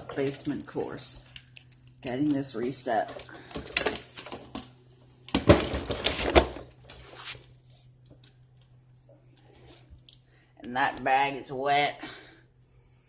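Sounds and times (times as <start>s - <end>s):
objects clattering and rustling: 2.9s - 7.4s.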